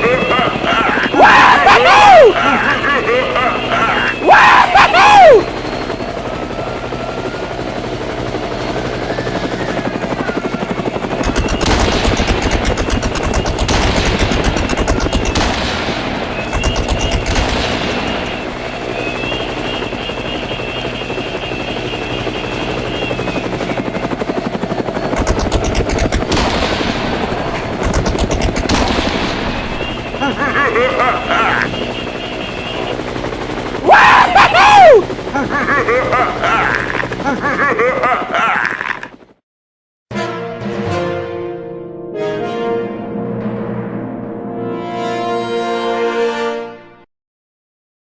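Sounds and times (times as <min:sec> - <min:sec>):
toy helicopter whirring: 0:02.4 - 0:15.4, 0:16.1 - 0:26.3, 0:27.7 - 0:39.1
rapid rattling: 0:11.1 - 0:18.8, 0:25.0 - 0:30.4.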